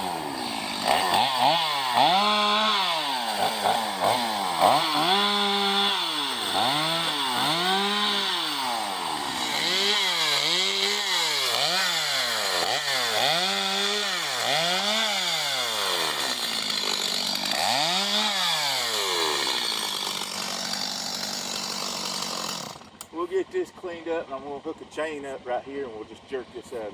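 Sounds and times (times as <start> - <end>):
chainsaw revving: 0.0 - 23.1.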